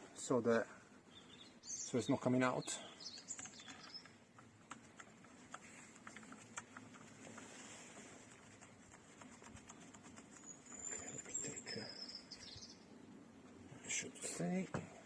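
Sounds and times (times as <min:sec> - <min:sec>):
screw clicks and taps: 0:03.1 - 0:07.4.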